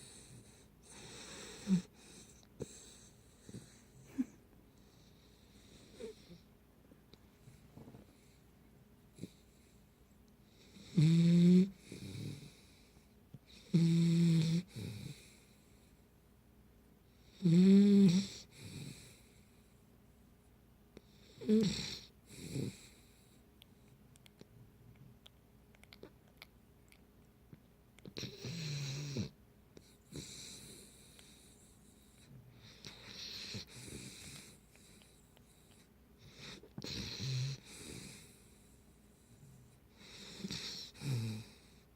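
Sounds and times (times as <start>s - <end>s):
puppy snoring: 0.0s - 6.5s, 9.1s - 9.8s, 10.5s - 15.8s, 17.2s - 19.4s, 21.0s - 23.4s, 28.0s - 41.9s
soft breath: 37.6s - 41.9s.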